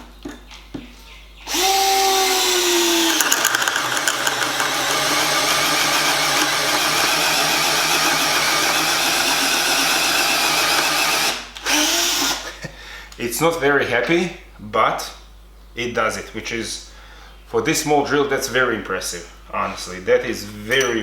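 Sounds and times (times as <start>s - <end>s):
rattle of bit cutting: 1.5s - 12.4s
cordless drill boring into wood: 1.5s - 12.5s.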